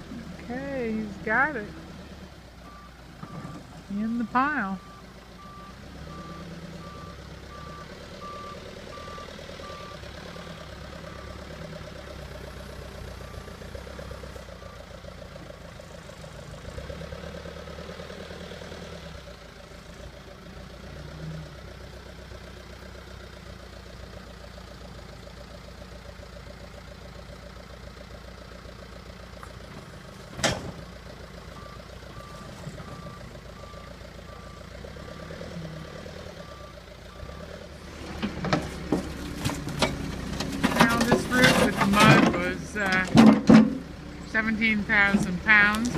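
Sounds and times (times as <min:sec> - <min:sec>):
diesel engine running: 0:00.0 - 0:45.9
reversing alarm beeping: 0:04.2 - 0:11.5, 0:31.6 - 0:35.8, 0:36.4 - 0:37.6.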